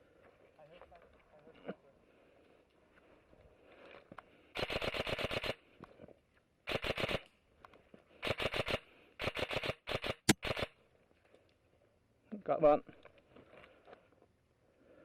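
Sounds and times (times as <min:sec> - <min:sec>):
airsoft rifle full auto bursts: 0:04.6 - 0:05.6, 0:06.7 - 0:07.2, 0:08.2 - 0:10.8.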